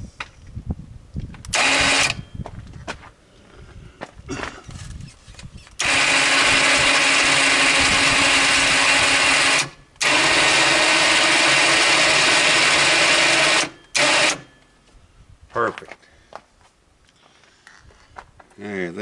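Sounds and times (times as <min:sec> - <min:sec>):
electric winch motor humming: 0:01.5 - 0:02.2, 0:05.8 - 0:14.6.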